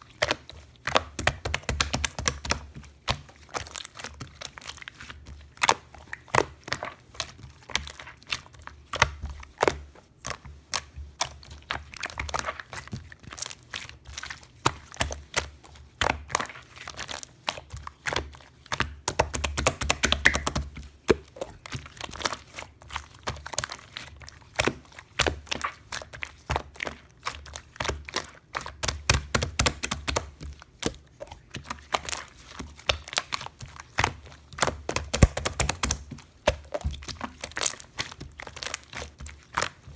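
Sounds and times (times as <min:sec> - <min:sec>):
irregular crackling and clicking: 0:33.9 - 0:39.9.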